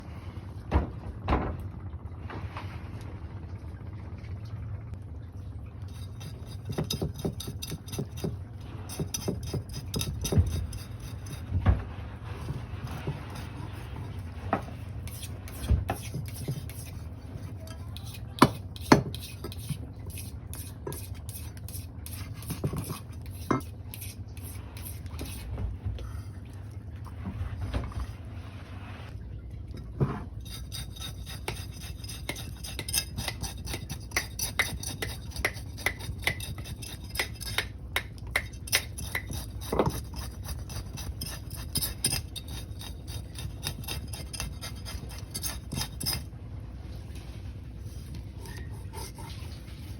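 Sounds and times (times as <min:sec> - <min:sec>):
low steady hum: 0:00.0 - 0:49.9.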